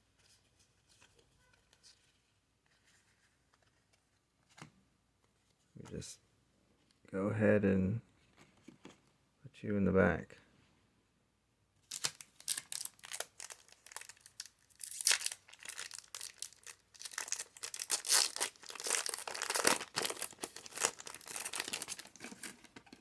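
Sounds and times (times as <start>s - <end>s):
foil wrapper tearing and crinkling: 11.9s - 23.0s.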